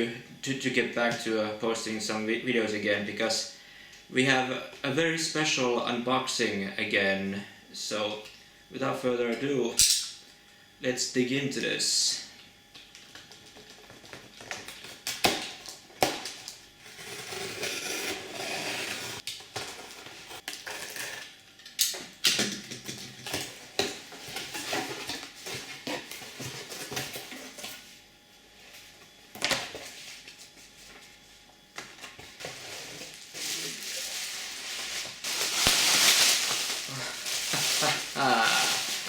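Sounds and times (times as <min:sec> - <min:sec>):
packaging rustling and crinkling: 0:32.0 - 0:39.0.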